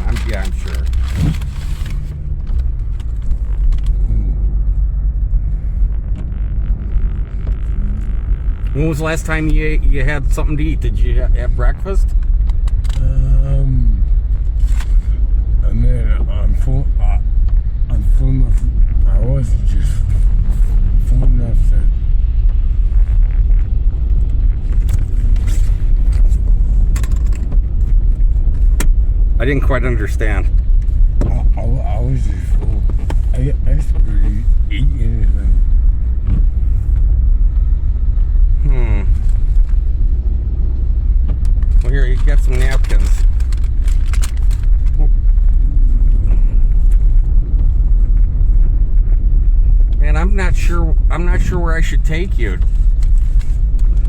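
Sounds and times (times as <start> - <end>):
car engine rumble: 0.0 - 54.0.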